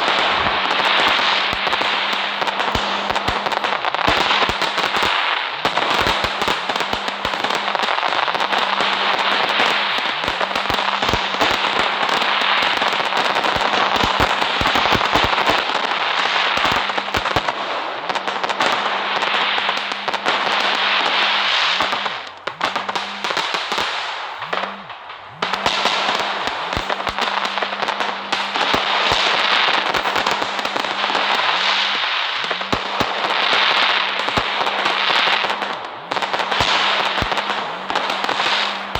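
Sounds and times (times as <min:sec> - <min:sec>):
fireworks crackling: 0:00.0 - 0:38.9.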